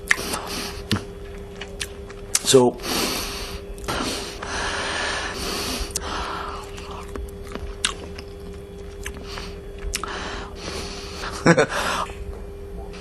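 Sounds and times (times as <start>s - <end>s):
man chewing loudly: 0.0s - 11.3s
breath through the nose: 2.8s - 7.0s.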